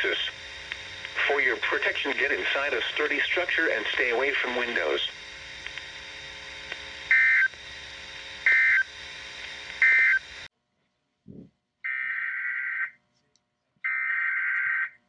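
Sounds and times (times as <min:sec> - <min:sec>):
faint radio hiss: 0:00.0 - 0:08.0
warbling data tones: 0:00.0 - 0:10.5.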